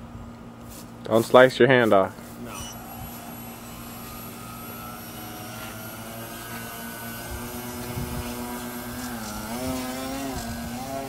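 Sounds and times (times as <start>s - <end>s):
model airplane motor buzzing: 2.2s - 11.0s.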